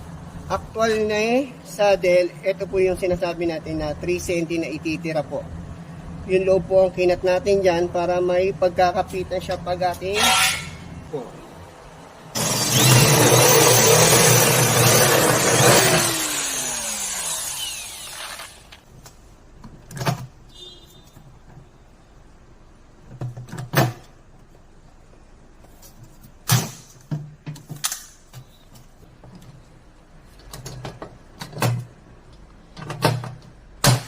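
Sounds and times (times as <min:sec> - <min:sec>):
angle grinder cutting sheet metal: 0:10.2 - 0:10.9, 0:12.4 - 0:18.8.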